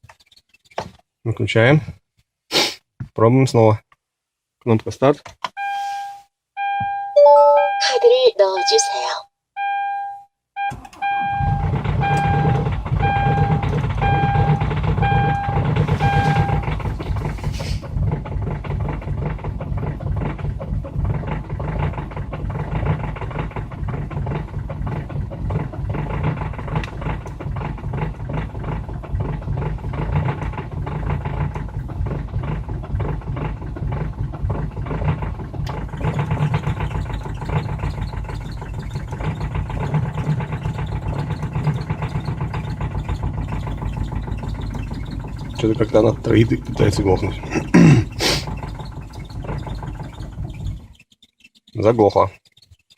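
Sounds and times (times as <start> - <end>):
dashboard warning chime beeping: 5.6 - 16.8
diesel engine idling unevenly: 11.0 - 51.0.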